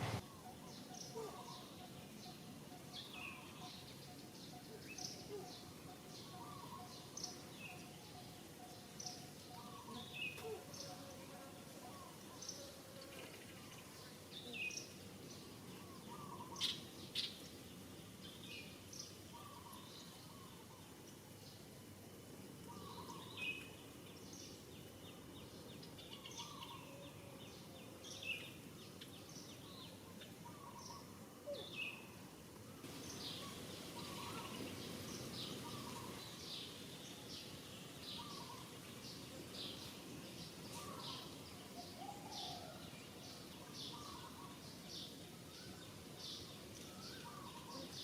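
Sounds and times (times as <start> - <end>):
steady background hiss: 0.0 - 48.0
birds chirping: 11.9 - 21.7, 22.7 - 32.1, 32.8 - 48.0.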